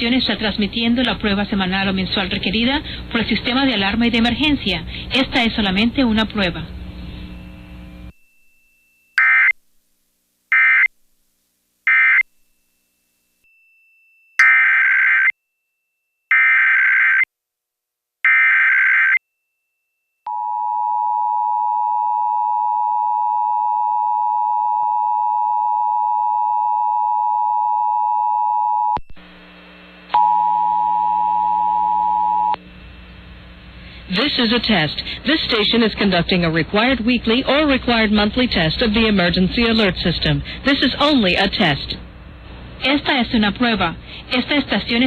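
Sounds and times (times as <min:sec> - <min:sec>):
humming background: 0:00.0 - 0:10.4, 0:20.3 - 0:45.0.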